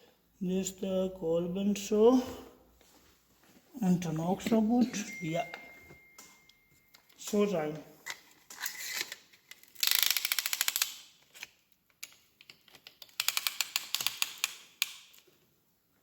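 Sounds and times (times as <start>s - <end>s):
hand ratchet clicking: 8.8s - 11.1s, 12.8s - 15.1s.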